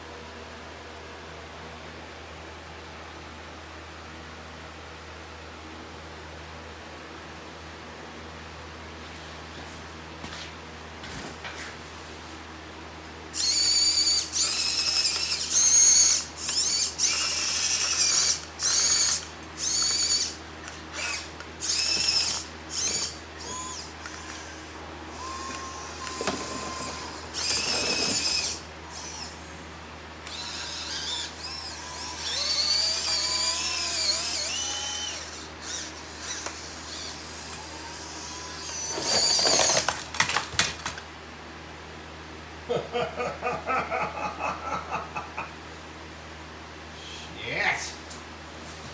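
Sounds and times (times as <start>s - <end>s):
small electric motors whining: 13.3s - 41.0s.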